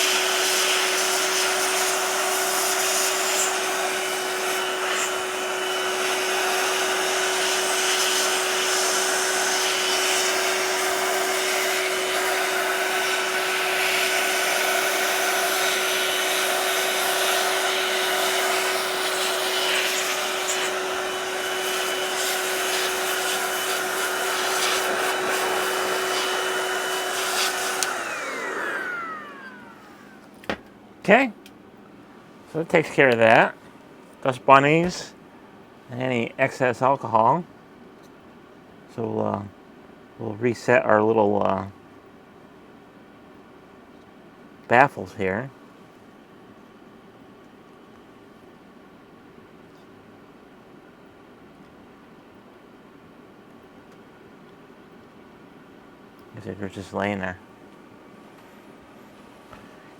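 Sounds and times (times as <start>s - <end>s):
electric air blower whining: 0.0s - 30.8s, 56.3s - 59.9s.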